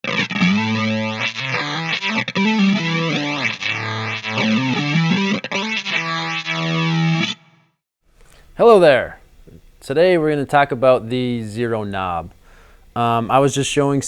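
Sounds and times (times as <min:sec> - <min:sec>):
distorted electric guitar with flanger: 0:00.0 - 0:07.5.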